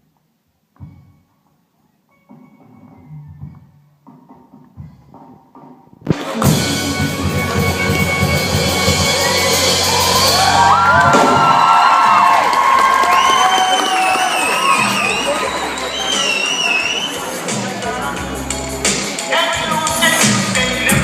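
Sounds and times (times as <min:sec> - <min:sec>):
music: 0:00.0 - 0:21.0
drumming: 0:04.4 - 0:21.0
crowd cheering and screaming: 0:08.8 - 0:17.9
high shrieks and shouts: 0:09.3 - 0:17.4.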